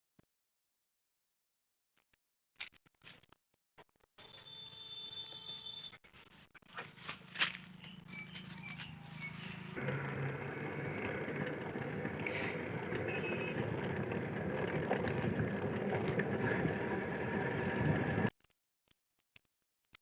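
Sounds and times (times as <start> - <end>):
motor-driven machine running: 7.5 - 18.3.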